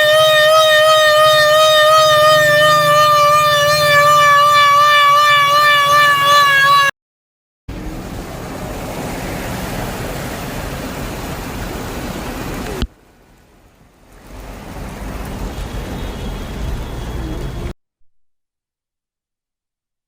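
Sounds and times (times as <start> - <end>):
water rushing: 7.7 - 16.9.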